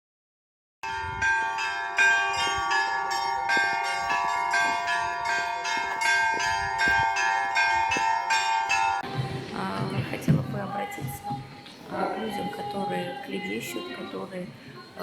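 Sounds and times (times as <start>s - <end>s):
small church bells ringing: 0.8s - 9.1s
hum of large bells: 0.8s - 9.3s.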